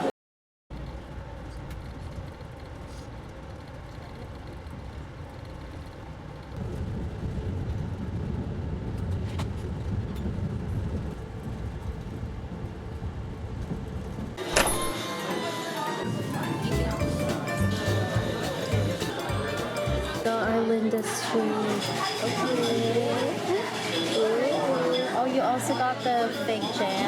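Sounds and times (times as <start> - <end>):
motor vehicle rumble: 0.7 - 14.9.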